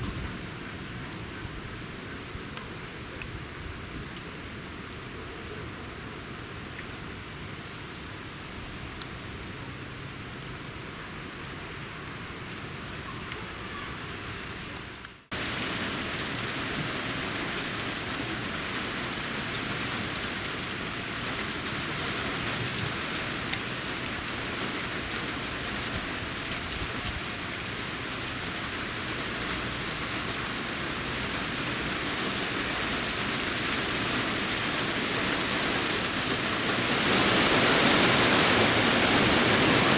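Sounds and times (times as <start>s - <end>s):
rain downpour hissing: 0.0s - 39.9s
insects chirring: 4.8s - 15.0s.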